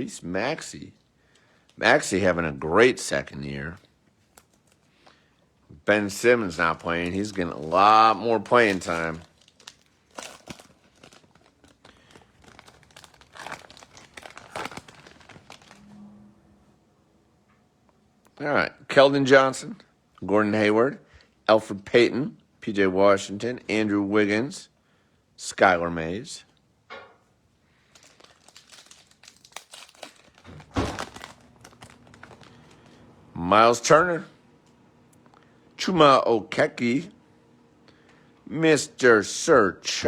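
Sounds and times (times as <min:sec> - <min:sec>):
wrapper crinkling: 0:03.6 - 0:05.3, 0:06.1 - 0:15.9, 0:27.8 - 0:33.1
cards rustling: 0:06.1 - 0:15.8, 0:27.9 - 0:33.0.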